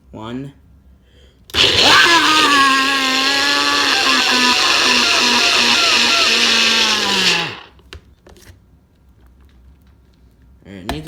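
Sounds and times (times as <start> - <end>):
blender motor whirring: 1.5 - 7.8.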